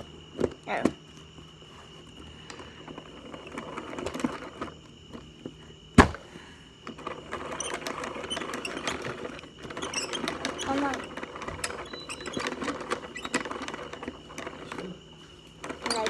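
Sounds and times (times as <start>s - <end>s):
toy mixer gears rattling and scraping: 7.0s - 16.0s.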